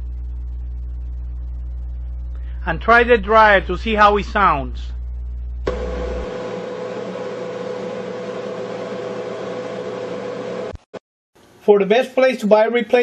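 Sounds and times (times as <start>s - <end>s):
clothes dryer running: 5.7s - 10.8s.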